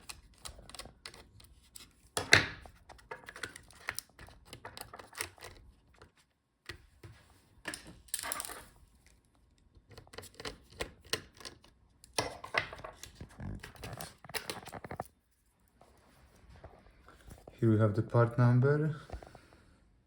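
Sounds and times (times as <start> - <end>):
clicks and knocks of laptop parts: 0.0 - 6.1, 9.9 - 15.1.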